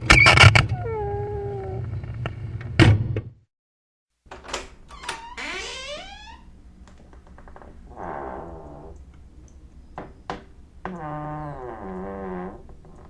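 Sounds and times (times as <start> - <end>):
door hinge creaking: 4.3 - 6.5.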